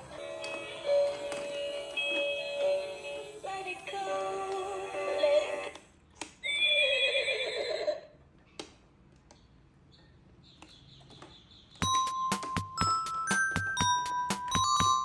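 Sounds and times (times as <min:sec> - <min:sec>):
horse whinny: 0:06.5 - 0:08.0.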